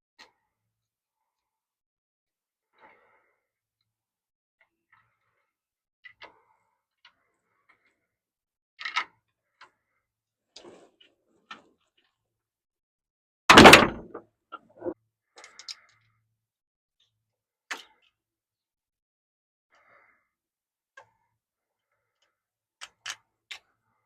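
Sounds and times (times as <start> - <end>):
loud bang: 13.5 - 14.2.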